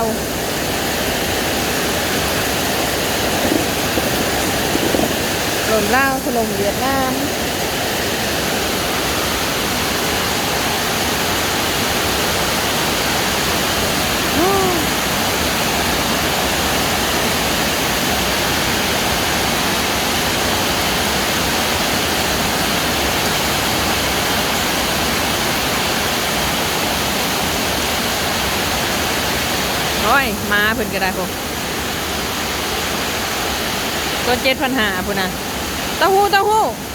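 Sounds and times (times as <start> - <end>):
rushing floodwater: 0.0 - 36.9
voice call: 5.7 - 7.3, 14.2 - 15.0, 30.0 - 31.4, 34.3 - 35.4, 36.0 - 36.8.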